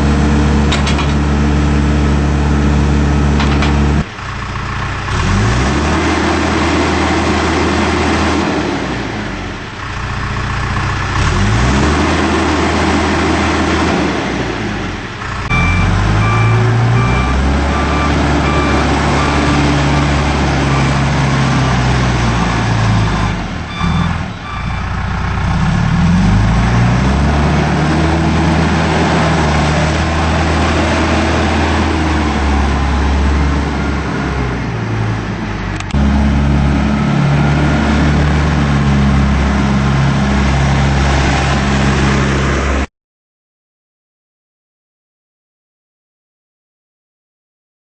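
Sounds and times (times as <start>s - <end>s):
diesel engine revving: 0.0s - 42.9s
reversing alarm beeping: 15.5s - 21.7s, 22.4s - 25.1s.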